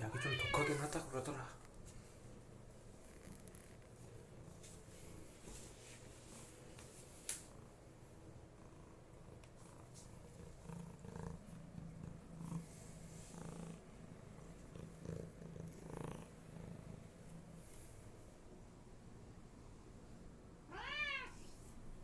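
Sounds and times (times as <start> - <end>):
cat purring: 2.7 - 5.4, 7.4 - 18.4.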